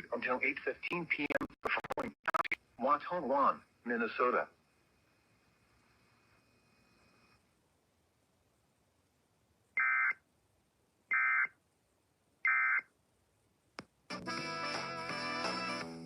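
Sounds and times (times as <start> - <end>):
digital data tones: 1.1 - 2.6.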